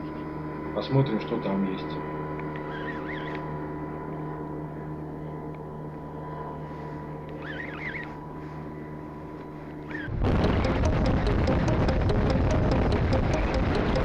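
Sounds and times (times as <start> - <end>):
bird calling: 2.5 - 3.6, 7.3 - 9.0, 9.8 - 10.1.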